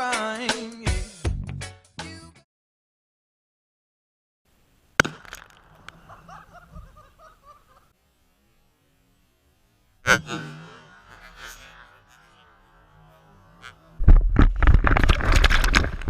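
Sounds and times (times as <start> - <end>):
laughter: 5.9 - 8.0
faint voices: 10.1 - 14.0.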